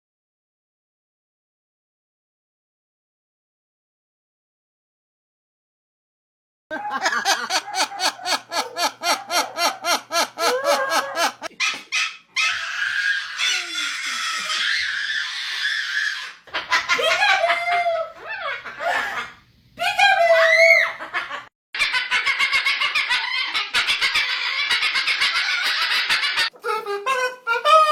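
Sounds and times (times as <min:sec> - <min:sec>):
parrot laugh-like bursts: 0:06.8 - 0:12.2
parrot rising-and-falling calls: 0:10.2 - 0:16.4
parrot harsh screech: 0:11.6 - 0:16.4.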